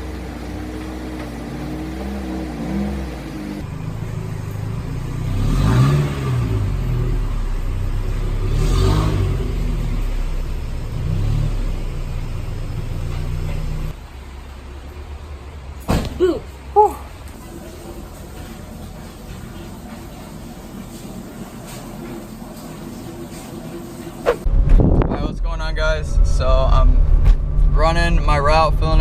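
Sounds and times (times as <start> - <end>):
car engine revving: 0.0 - 15.9.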